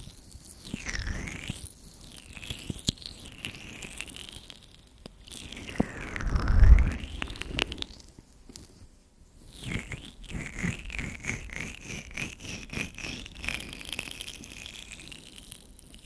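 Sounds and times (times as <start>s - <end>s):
oiled hands rubbing microphone: 5.4s - 8.2s.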